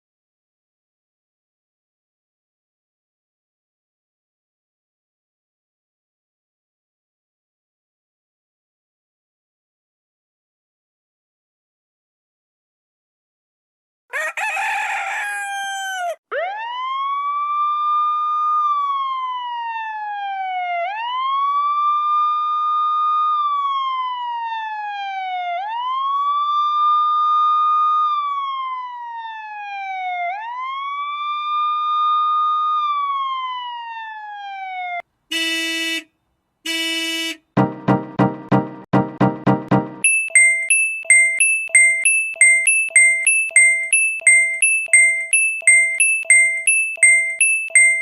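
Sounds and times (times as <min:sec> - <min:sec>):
wailing siren alarm: 0:14.4 - 0:35.0, 0:40.3 - 0:48.0
harsh horn blast: 0:35.3 - 0:36.1, 0:36.7 - 0:37.5.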